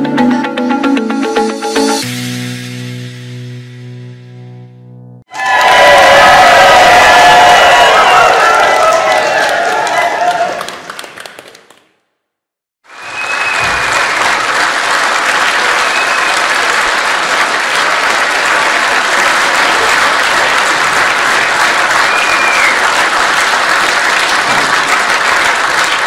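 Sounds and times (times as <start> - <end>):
audience applauding: 5.3 - 12.0, 12.9 - 26.0.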